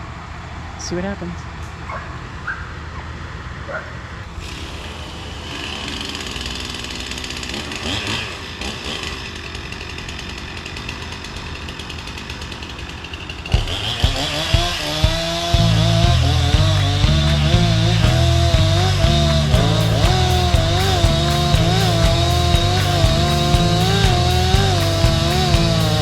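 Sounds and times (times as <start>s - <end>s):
chainsaw running: 4.3s - 26.0s
rock music with heavy drums: 14.6s - 26.0s.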